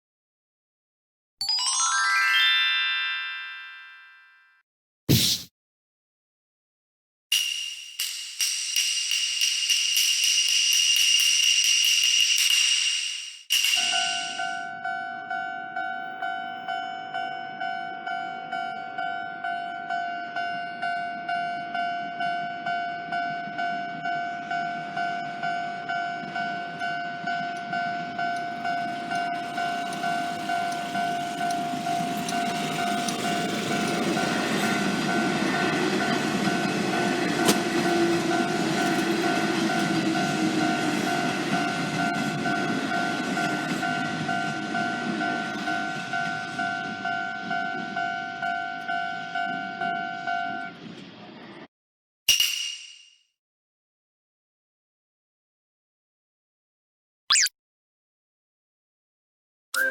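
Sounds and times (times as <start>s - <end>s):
level-crossing warning bell: 7.7s - 50.8s
train rumbling past: 24.0s - 51.7s.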